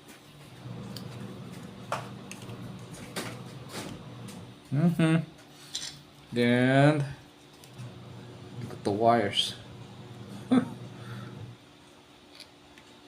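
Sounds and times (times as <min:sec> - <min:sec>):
low steady hum: 0:00.4 - 0:13.0.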